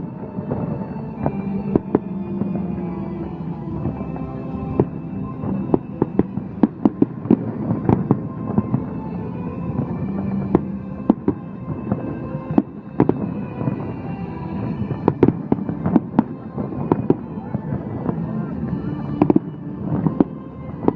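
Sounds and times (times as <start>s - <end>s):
music playing: 0.0s - 20.9s
fireworks cracks and bangs: 3.7s - 8.9s, 9.8s - 14.0s, 14.6s - 20.9s.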